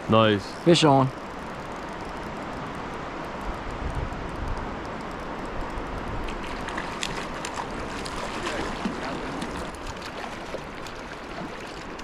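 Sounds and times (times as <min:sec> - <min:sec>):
river rushing: 0:05.6 - 0:12.0.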